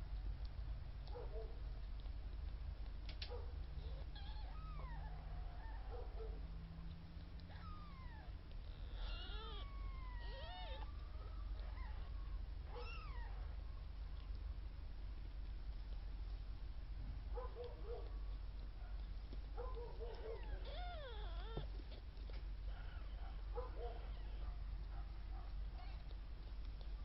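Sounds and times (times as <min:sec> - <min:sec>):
newborn kittens mewing: 0:03.6 - 0:06.7, 0:07.3 - 0:14.3, 0:20.1 - 0:24.9.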